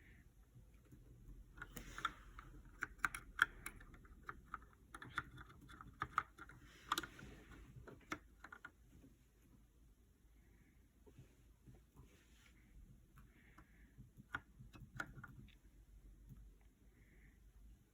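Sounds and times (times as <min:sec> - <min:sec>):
typing on mechanical keyboard: 0:00.8 - 0:07.2, 0:14.0 - 0:15.6.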